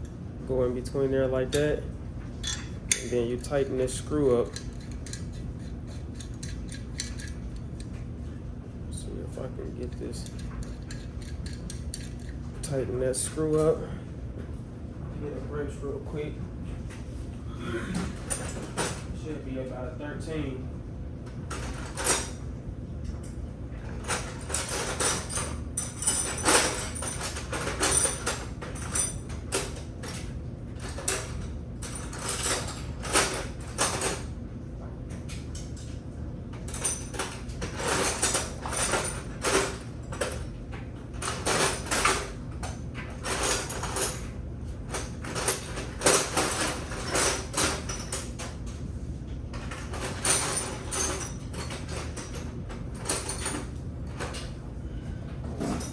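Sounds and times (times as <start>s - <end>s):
steady low hum: 0.0s - 55.9s
metal hand tools clinking: 4.3s - 7.4s.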